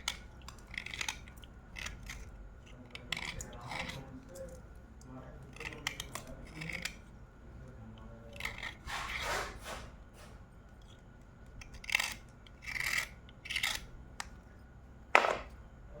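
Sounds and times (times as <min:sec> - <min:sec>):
pencil being chewed crunching: 0:00.0 - 0:04.4.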